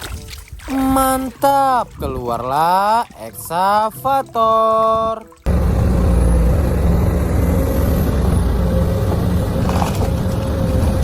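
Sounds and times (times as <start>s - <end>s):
excavator diesel engine running: 5.5s - 11.0s.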